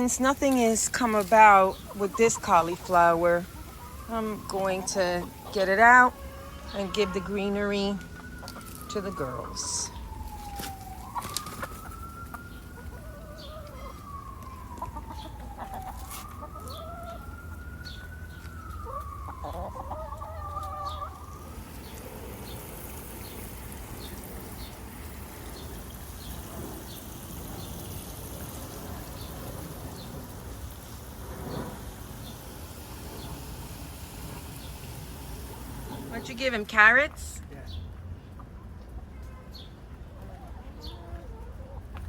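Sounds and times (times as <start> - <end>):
hens clucking: 0.0 - 22.9, 40.2 - 42.0
siren wailing: 0.0 - 30.6.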